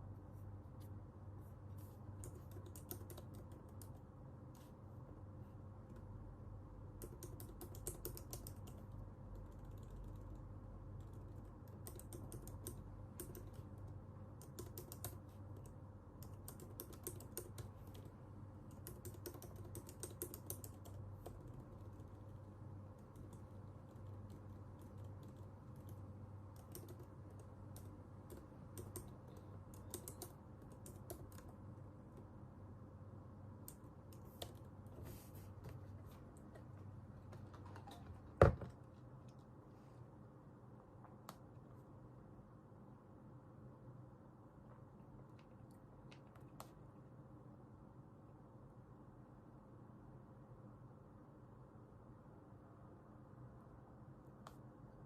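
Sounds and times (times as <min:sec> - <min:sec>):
steady low hum: 0:00.0 - 0:55.0
computer keyboard typing: 0:02.2 - 0:04.0, 0:06.9 - 0:32.3.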